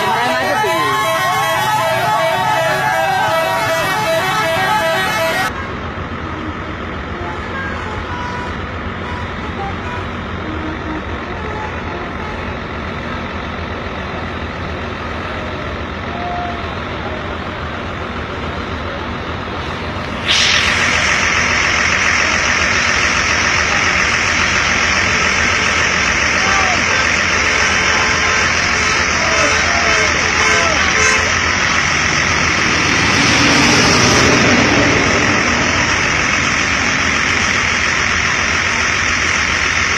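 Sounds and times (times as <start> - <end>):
traffic engine and road rumble: 0.0 - 39.9
loud steady hiss: 19.4 - 39.9.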